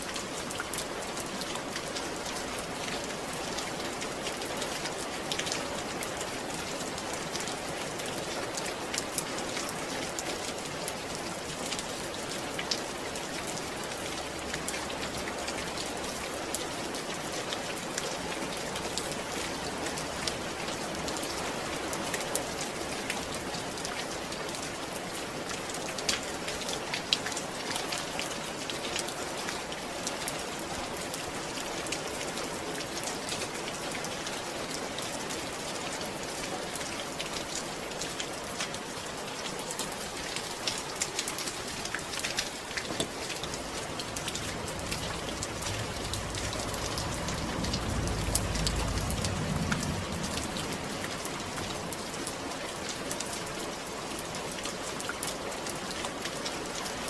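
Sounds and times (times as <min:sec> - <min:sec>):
raindrops pattering: 0:00.0 - 0:57.0
low rumble: 0:43.4 - 0:52.3.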